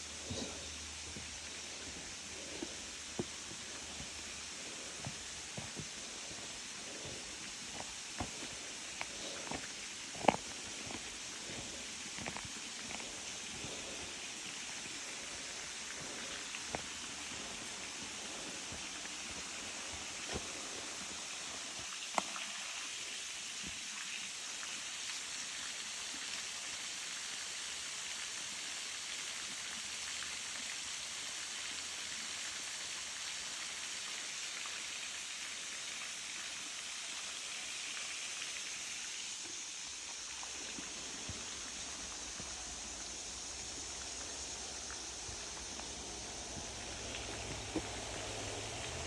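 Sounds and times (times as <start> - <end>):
waterfall rushing: 44.4 - 49.0.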